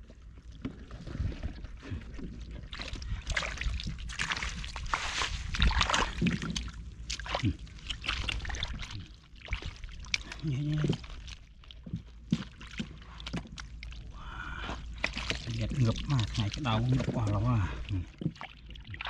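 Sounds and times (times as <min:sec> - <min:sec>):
water splashing and sloshing: 0:00.0 - 0:19.0.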